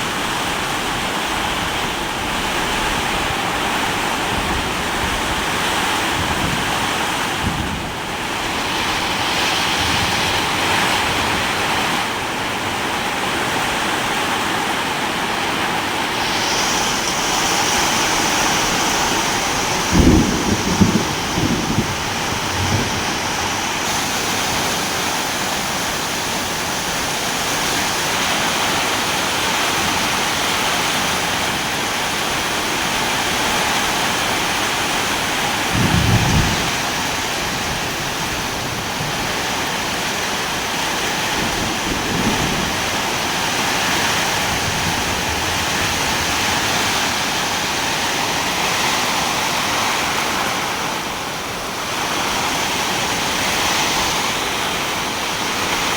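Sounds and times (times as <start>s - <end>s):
rain hissing: 0.0s - 55.9s
low rumbles of thunder: 1.8s - 11.5s, 16.7s - 23.9s, 35.7s - 39.6s, 41.2s - 47.2s.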